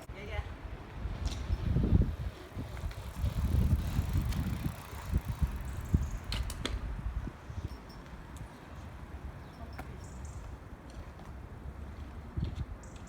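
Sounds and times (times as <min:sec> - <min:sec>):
bicycle being ridden: 0:00.0 - 0:07.8
bike knocks and sharp clicks: 0:02.3 - 0:06.9.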